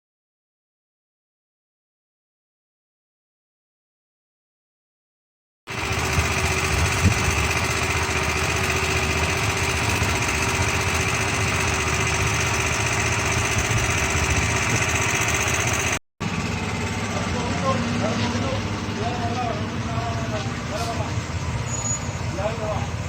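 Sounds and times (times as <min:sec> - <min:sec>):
small engine running: 0:05.7 - 0:23.0.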